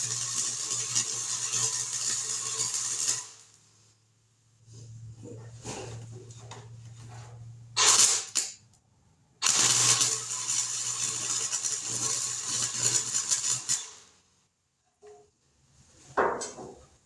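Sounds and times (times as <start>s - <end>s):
welding tack: 0.0s - 3.6s, 9.5s - 14.1s
crackling weld bead: 0.0s - 3.7s, 7.8s - 8.8s, 9.4s - 14.3s
low electrical hum: 3.4s - 9.4s.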